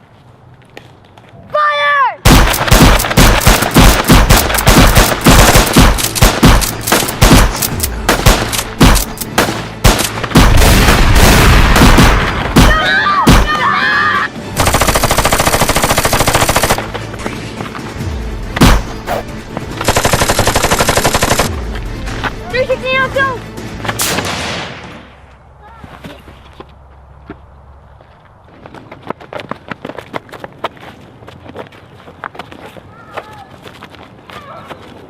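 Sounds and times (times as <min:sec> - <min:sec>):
gunfire volleys: 0:02.3 - 0:12.7
machine-gun fire: 0:02.3 - 0:13.4, 0:14.6 - 0:16.8, 0:19.8 - 0:21.6.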